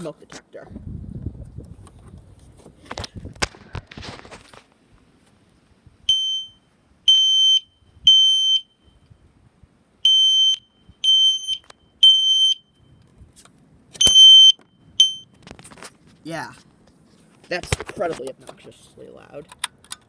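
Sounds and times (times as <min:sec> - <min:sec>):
fire alarm horn beeping: 0:06.1 - 0:08.8, 0:10.0 - 0:13.0, 0:14.0 - 0:15.3.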